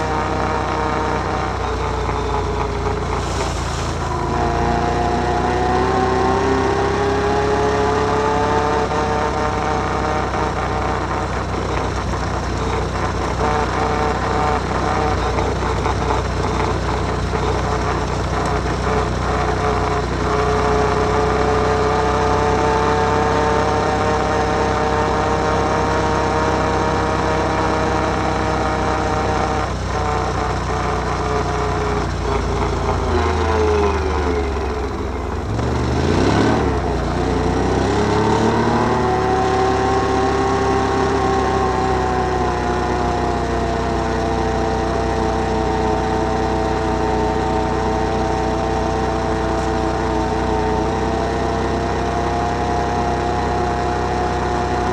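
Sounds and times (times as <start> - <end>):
atv engine running: 0.0 - 54.9.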